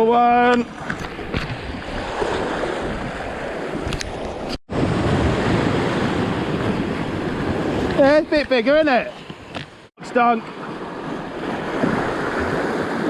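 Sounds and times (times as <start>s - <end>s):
wind buffeting microphone: 1.0s - 8.5s
sea surf washing on shore: 1.8s - 9.1s, 10.0s - 13.0s.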